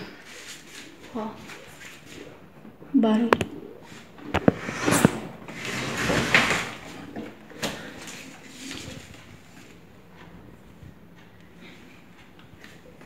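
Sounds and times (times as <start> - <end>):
refrigerator scraping on floor: 4.4 - 7.9.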